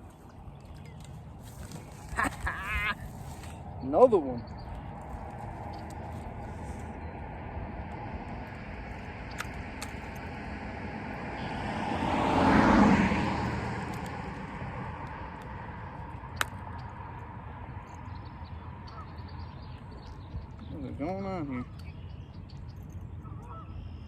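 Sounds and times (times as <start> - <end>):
car passing by: 5.1 - 16.2.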